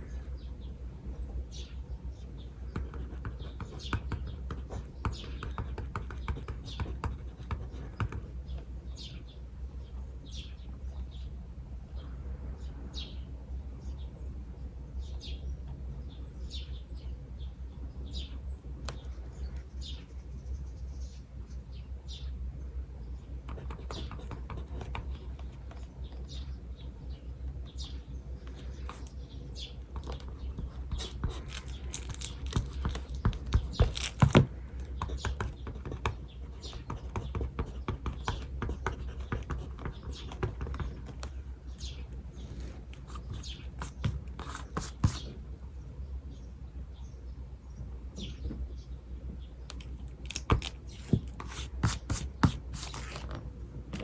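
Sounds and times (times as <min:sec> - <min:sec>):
small birds chirping: 0:00.0 - 0:53.3
writing scratching on paper: 0:02.7 - 0:08.4, 0:23.4 - 0:25.8, 0:28.5 - 0:29.2, 0:29.9 - 0:41.5, 0:42.4 - 0:45.3, 0:49.8 - 0:53.3.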